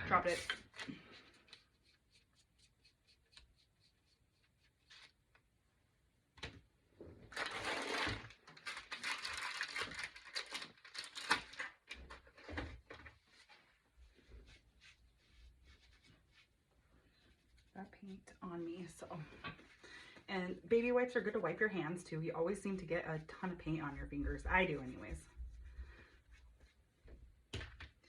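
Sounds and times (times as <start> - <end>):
baby wipe rubbing fingers: 1.4 - 5.3, 13.4 - 18.4.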